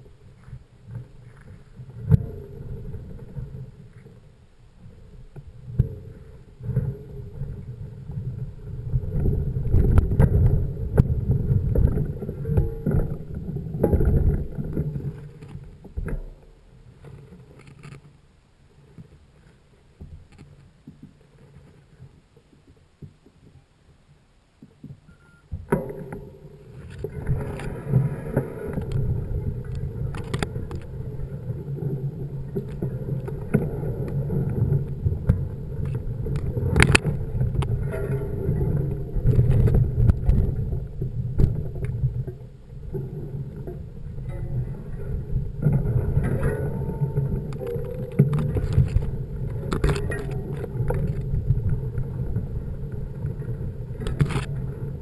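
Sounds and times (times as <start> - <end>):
mountain bike riding over rough ground: 25.6 - 55.0.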